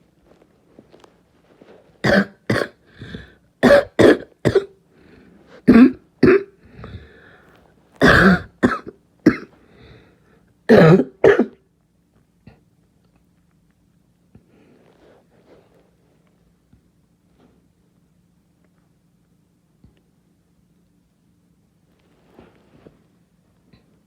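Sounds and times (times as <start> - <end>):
harsh barking cough: 2.0 - 2.8, 3.6 - 4.8, 5.7 - 6.5, 8.0 - 9.6, 10.7 - 11.6.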